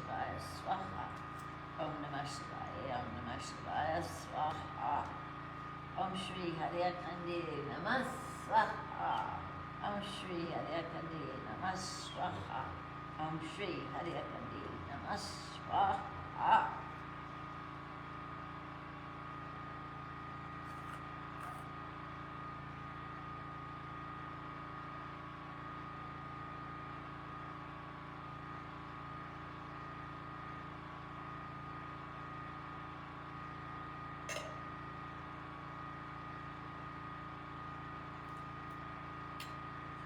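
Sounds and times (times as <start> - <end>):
generator humming: 0.0 - 40.0.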